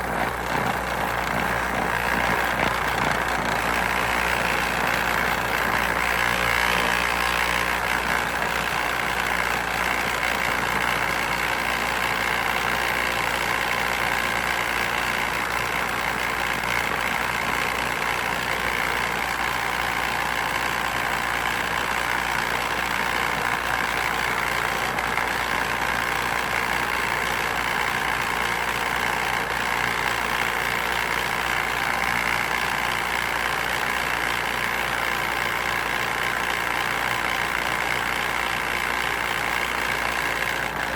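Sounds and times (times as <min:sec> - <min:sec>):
motorized compost sifter running: 0:00.0 - 0:40.9.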